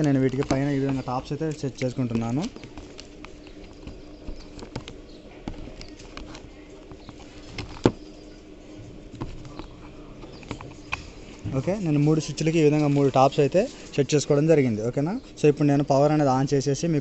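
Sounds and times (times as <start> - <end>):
plastic knobs clicking: 0.0 - 8.0
faint steady hum: 0.0 - 17.0.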